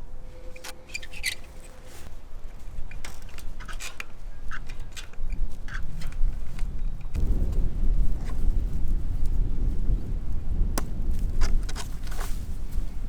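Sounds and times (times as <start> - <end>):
wire fence clicks and scrapes: 0.4 - 7.2
low rumble: 7.1 - 13.0.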